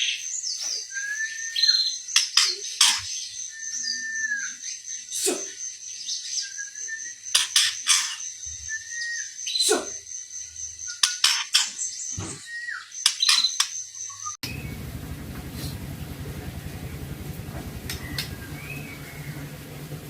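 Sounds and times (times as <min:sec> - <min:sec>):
birds whistling: 0:00.0 - 0:14.9, 0:17.8 - 0:20.0
sharp bird clicks: 0:02.1 - 0:03.1, 0:07.3 - 0:08.2, 0:10.9 - 0:11.8, 0:13.0 - 0:14.3.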